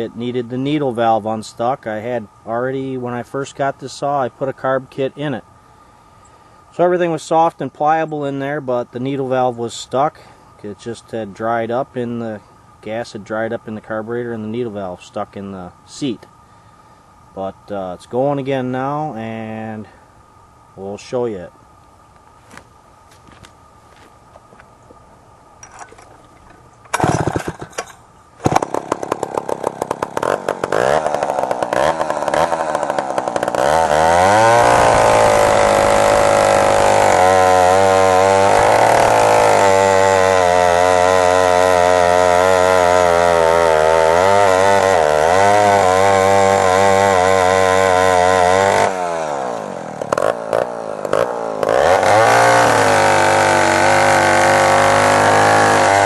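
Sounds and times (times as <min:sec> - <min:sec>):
chainsaw engine revving: 0:25.6 - 0:56.0
chainsaw pull-start: 0:25.6 - 0:56.0.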